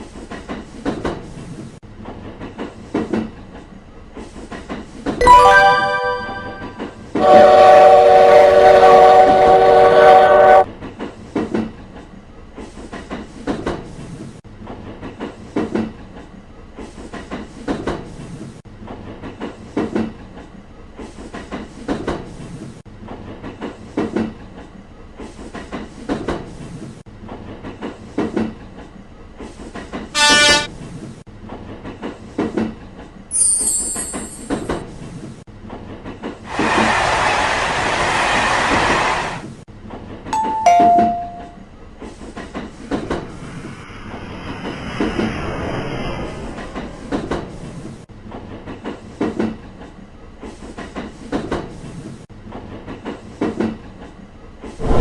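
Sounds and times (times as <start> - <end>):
train horn: 5.2 - 10.7, 30.2 - 30.7
train wheels clacking over rail joints: 47.1 - 54.8.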